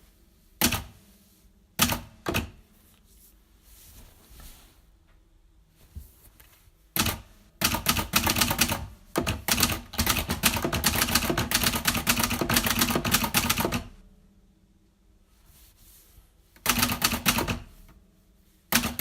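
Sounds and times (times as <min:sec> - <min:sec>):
typewriter keys clacking: 0:07.0 - 0:13.9.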